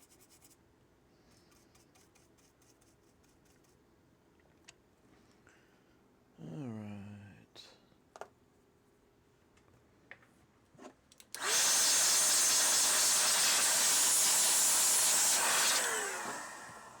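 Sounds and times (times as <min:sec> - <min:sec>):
blower air hiss: 0:11.4 - 0:17.0
blower spinning down whine: 0:11.4 - 0:17.0.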